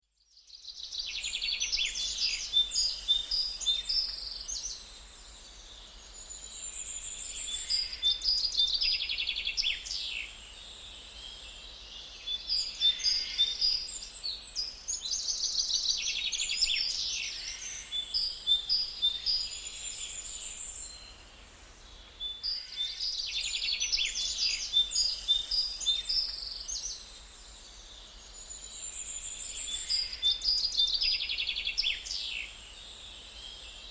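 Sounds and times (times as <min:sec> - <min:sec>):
small birds chirping: 0:00.0 - 0:33.9.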